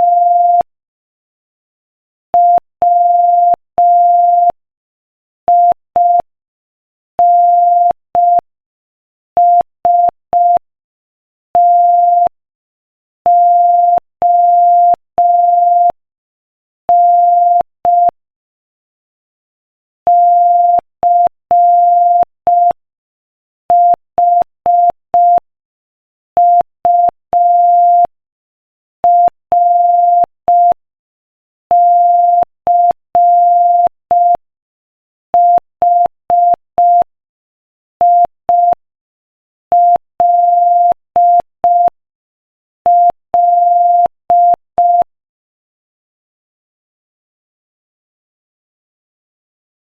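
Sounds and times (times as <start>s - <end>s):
morse code beeps: 0.0s - 0.7s, 11.6s - 12.3s, 13.3s - 16.0s, 20.1s - 22.8s, 23.7s - 25.4s, 26.4s - 28.1s, 29.1s - 30.8s, 31.7s - 34.4s, 35.4s - 37.1s, 38.0s - 38.8s, 39.7s - 42.0s, 42.9s - 45.1s.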